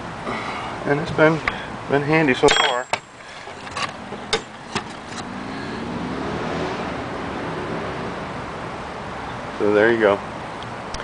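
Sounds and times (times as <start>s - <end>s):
road vehicle passing: 3.2s - 10.9s.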